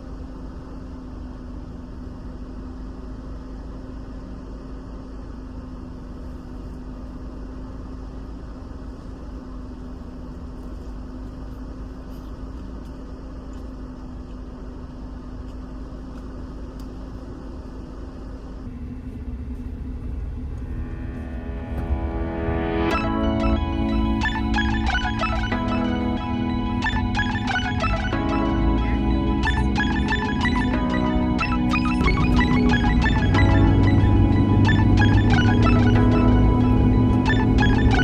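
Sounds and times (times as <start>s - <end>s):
mechanical hum: 13.0s - 38.0s
low rumble: 18.6s - 38.0s.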